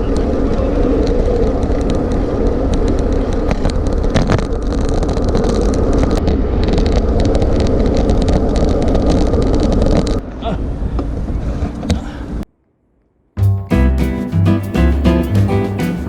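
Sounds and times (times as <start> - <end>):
wind and road noise rumble: 0.0 - 12.4.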